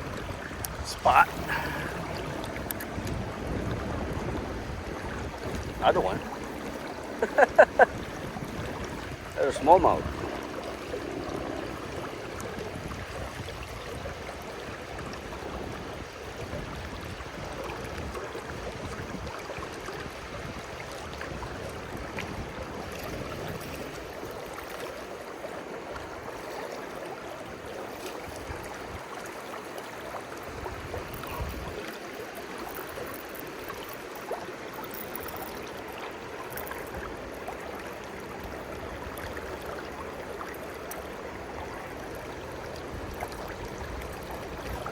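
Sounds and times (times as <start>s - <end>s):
river water rushing: 0.0s - 44.9s.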